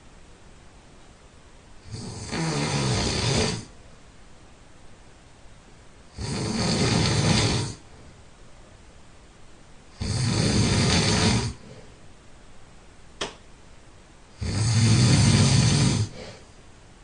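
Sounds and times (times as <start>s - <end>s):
person snoring: 1.8s - 3.8s, 6.1s - 7.9s, 10.0s - 11.9s, 14.4s - 16.5s.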